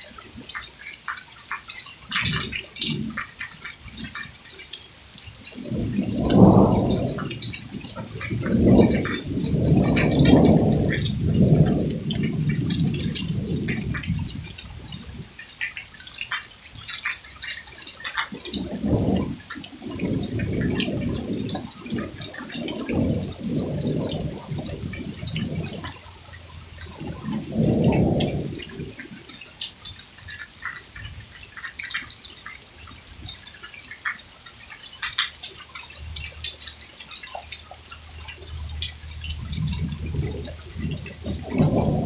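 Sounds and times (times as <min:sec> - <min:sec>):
hail ticking: 0:00.0 - 0:42.0
low rumbling surges: 0:05.4 - 0:15.3, 0:18.7 - 0:29.4, 0:38.1 - 0:42.0.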